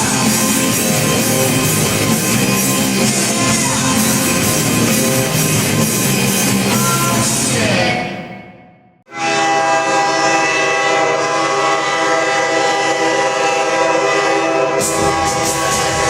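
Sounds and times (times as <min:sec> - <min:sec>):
music: 0:00.0 - 0:09.0, 0:14.8 - 0:16.0
goal horn blast: 0:06.6 - 0:16.0.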